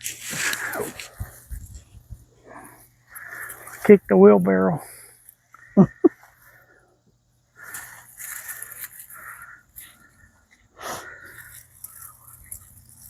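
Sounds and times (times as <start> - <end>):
footsteps through soil and plants: 0.0 - 4.0, 7.6 - 13.0.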